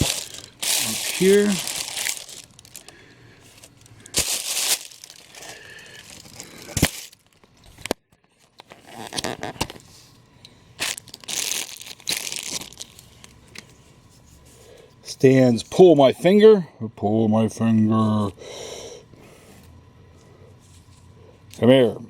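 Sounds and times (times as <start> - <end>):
packaging crinkling and rustling: 0.0 - 9.9, 10.8 - 13.7.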